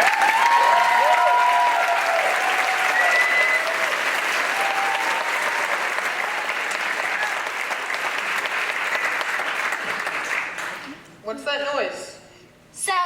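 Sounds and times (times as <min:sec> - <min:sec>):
drawn-out cheers: 0:00.0 - 0:07.6
audience applauding: 0:00.0 - 0:11.0.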